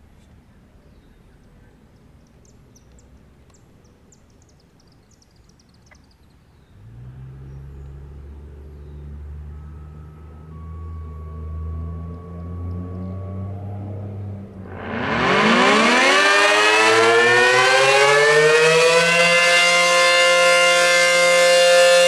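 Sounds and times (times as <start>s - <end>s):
small birds chirping: 0.9s - 8.0s
warning siren winding up: 9.2s - 22.0s.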